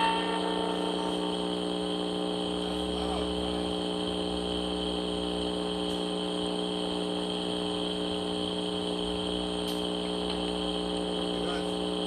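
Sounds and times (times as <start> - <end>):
faint high whine: 0.0 - 7.7
steady low hum: 0.0 - 12.0.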